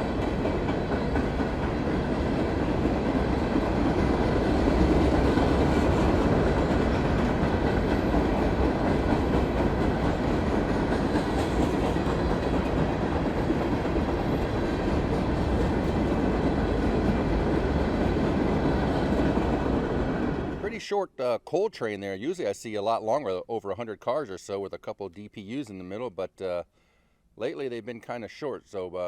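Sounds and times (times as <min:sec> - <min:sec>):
steel train wheels on rails: 0:00.0 - 0:20.7.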